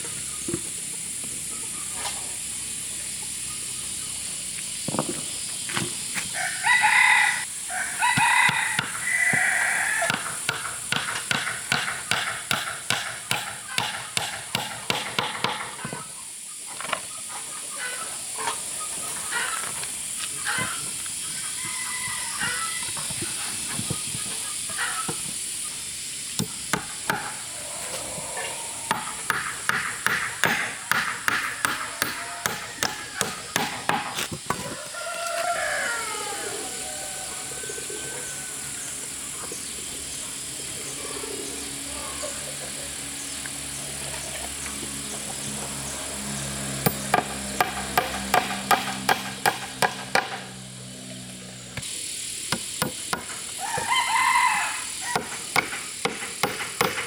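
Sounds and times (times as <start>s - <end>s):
insects buzzing: 0.0s - 57.0s
rooster crowing: 6.3s - 10.5s, 21.4s - 23.0s, 26.8s - 33.7s, 34.6s - 39.4s, 53.6s - 55.5s.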